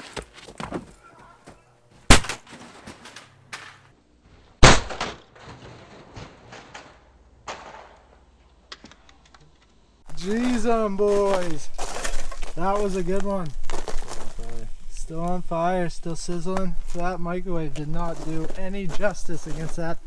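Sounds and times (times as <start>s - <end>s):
sharp loud bangs: 2.1s - 3.3s, 4.6s - 5.7s
knocks and clatter: 5.0s - 9.7s.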